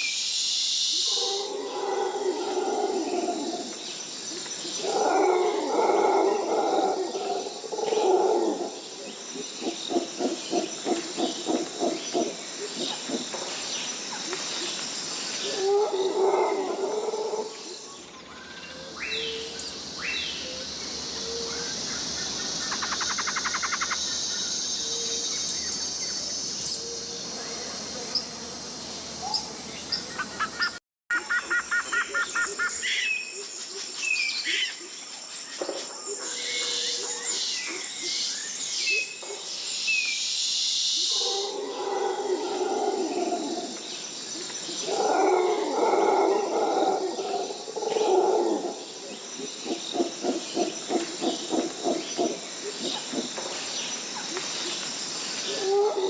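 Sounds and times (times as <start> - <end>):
high insect hum: 0.0 - 56.0
bird calls and chirps: 17.8 - 28.3.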